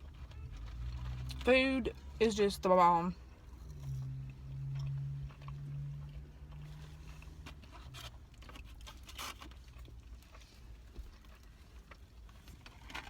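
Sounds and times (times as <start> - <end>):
person chewing food: 3.4 - 13.0.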